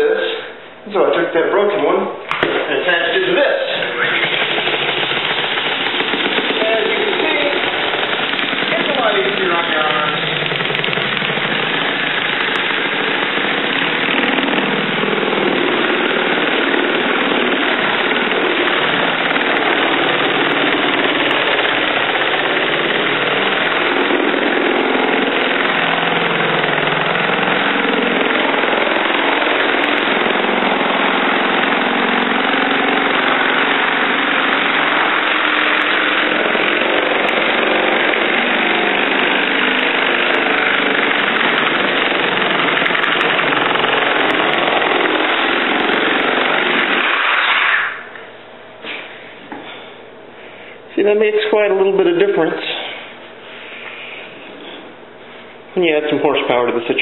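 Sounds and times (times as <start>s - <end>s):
reciprocating saw sanding drywall: 2.8s - 48.1s.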